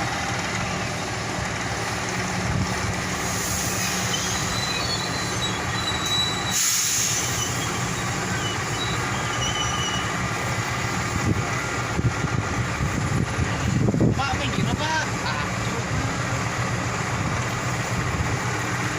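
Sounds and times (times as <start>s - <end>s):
diesel engine hum: 0.0s - 18.9s
hiss: 3.1s - 10.2s
train wheels squealing: 3.4s - 10.2s.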